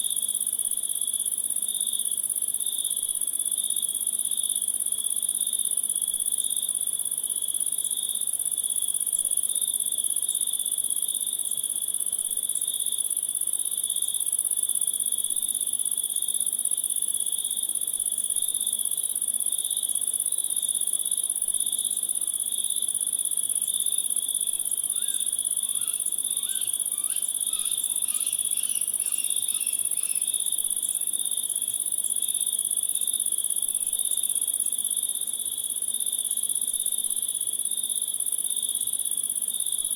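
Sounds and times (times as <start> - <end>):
insects chirring: 23.6 - 32.5
faint chirps: 24.9 - 30.4.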